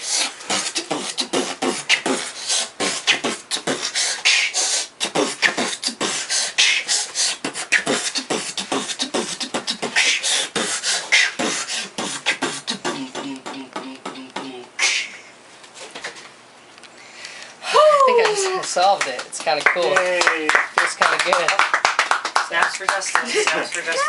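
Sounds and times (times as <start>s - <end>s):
person beatboxing: 0.0s - 15.3s.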